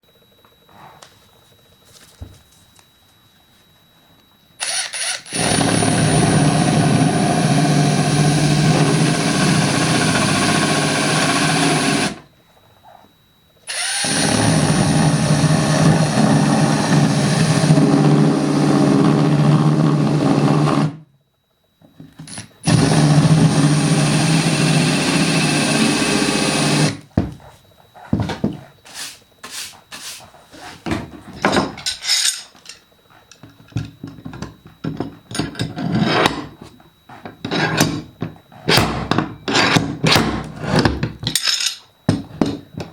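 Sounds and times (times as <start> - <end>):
power drill cutting wood: 4.6 - 12.2, 13.7 - 21.0, 22.6 - 27.0.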